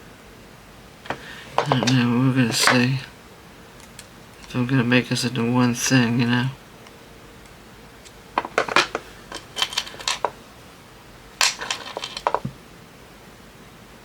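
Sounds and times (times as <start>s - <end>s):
small metal charms clinking: 8.4s - 10.3s, 11.4s - 12.5s.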